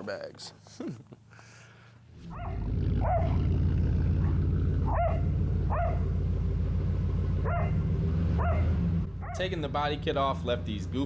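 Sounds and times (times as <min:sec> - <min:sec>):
low rumble: 0:02.2 - 0:11.0
dog yelping: 0:02.3 - 0:03.4, 0:04.2 - 0:06.2, 0:07.4 - 0:09.4.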